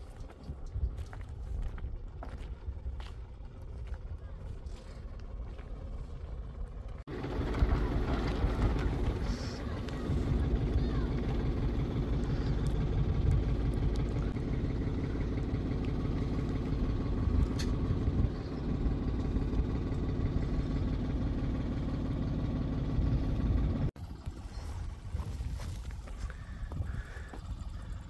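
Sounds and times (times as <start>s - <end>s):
tractor diesel engine running: 0.0s - 28.0s.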